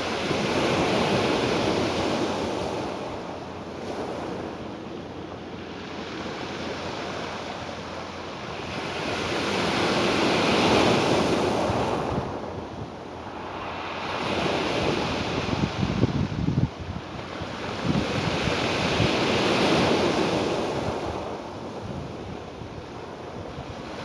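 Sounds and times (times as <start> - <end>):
ocean waves washing onto shore: 0.0 - 24.0
wind on microphone: 9.6 - 24.0.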